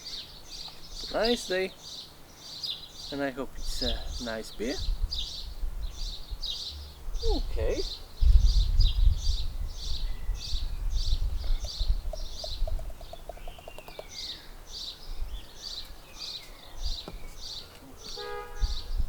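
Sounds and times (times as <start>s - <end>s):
songbird chirping: 0.0s - 19.0s
wind rumble on microphone: 3.6s - 14.2s, 15.0s - 15.6s, 16.8s - 17.5s, 18.2s - 19.0s.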